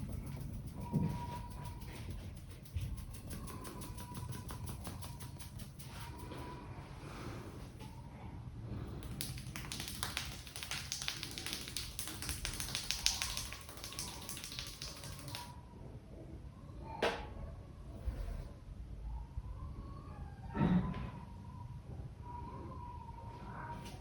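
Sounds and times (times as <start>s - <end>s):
hands tapping on a head: 0.0s - 6.3s, 9.0s - 15.5s.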